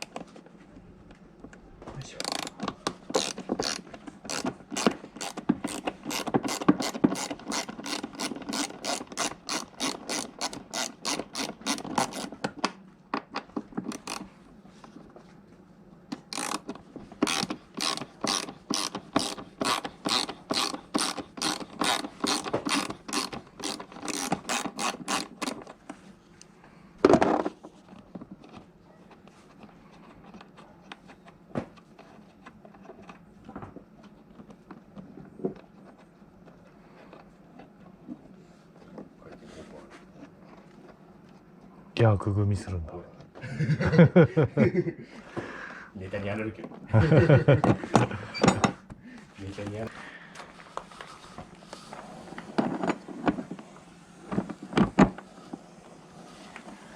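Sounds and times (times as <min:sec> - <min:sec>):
ratchet wrench clicking: 0:16.4 - 0:16.6, 0:17.2 - 0:25.6.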